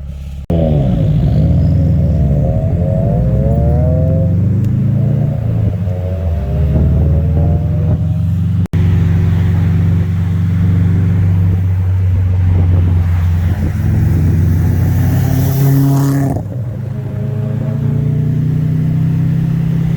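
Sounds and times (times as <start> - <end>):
car engine revving: 0.0 - 19.9.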